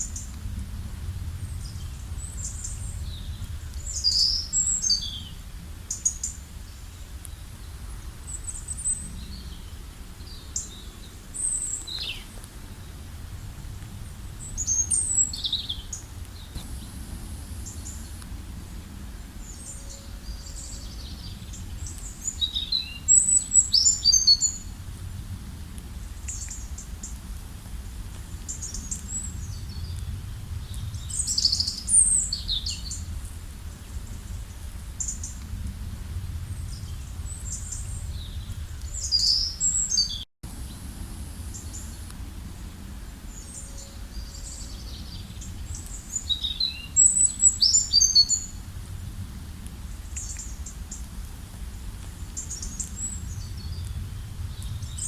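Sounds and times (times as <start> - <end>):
low steady rumble: 5.2 - 22.4.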